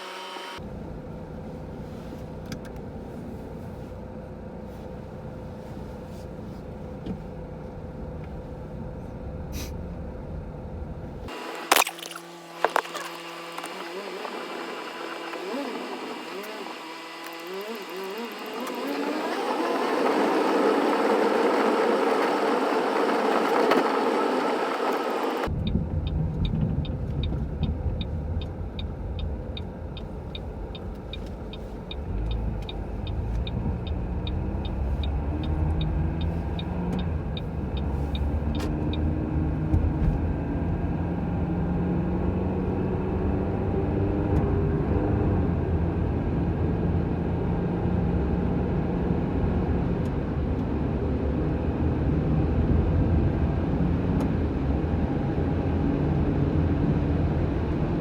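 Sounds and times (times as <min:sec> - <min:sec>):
car engine: 0:00.0 - 0:58.0
road rumble: 0:00.0 - 0:58.0
turn signal relay ticking: 0:24.8 - 0:39.1.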